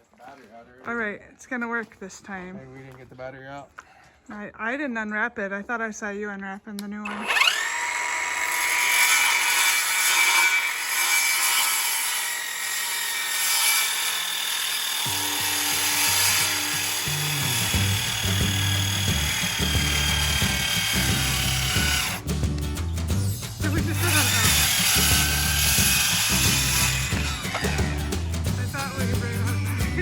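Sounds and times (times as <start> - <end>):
power tool motor whining: 7.0 - 22.2, 23.8 - 30.0
background music with bass: 15.1 - 30.0.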